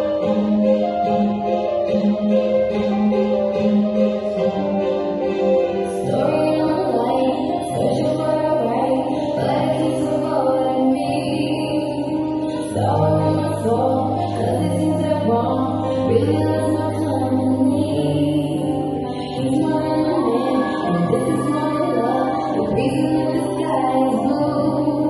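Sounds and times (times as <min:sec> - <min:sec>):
jazz dance music with chords: 0:00.0 - 0:25.0
bass line: 0:12.8 - 0:25.0.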